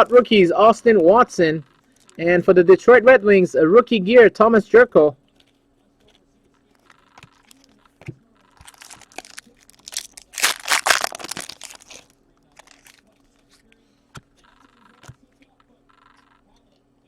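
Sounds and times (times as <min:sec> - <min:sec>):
plastic wrapper crinkling and tearing: 0:08.6 - 0:13.5.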